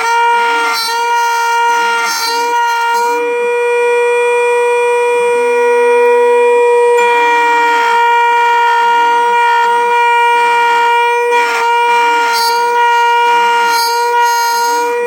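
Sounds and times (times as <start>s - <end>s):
key cutter spindle whining: 0.0s - 4.6s, 6.9s - 15.0s.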